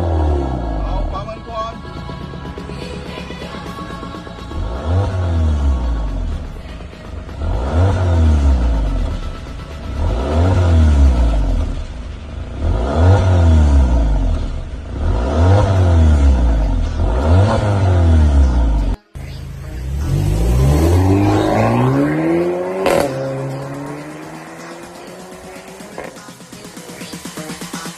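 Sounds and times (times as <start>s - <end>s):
car engine revving: 0.0s - 27.9s.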